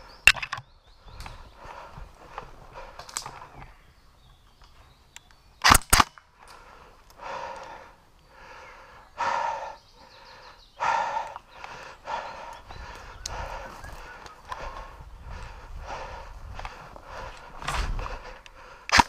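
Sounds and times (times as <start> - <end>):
airsoft gun cracks: 5.6 - 6.2.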